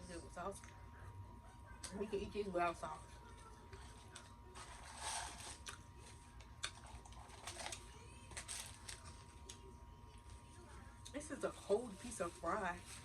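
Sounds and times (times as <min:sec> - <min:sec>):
chewing food: 0:05.5 - 0:10.3.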